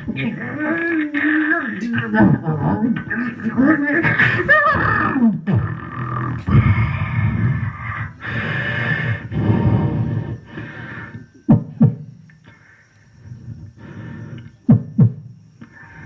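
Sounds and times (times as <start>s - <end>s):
beatboxer growling: 0.0s - 10.5s.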